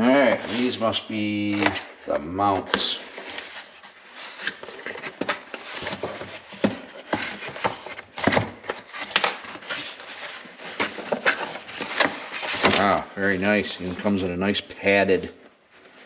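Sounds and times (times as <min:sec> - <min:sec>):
packaging rustling: 0:02.8 - 0:14.3.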